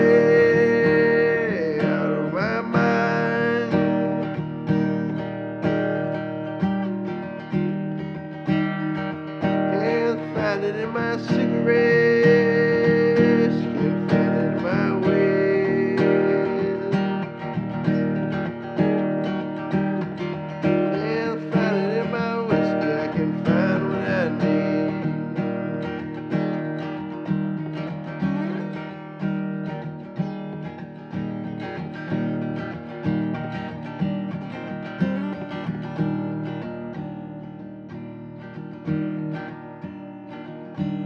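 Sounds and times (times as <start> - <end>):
person singing: 0.0 - 6.4, 9.4 - 26.6
acoustic guitar strumming: 0.0 - 41.0.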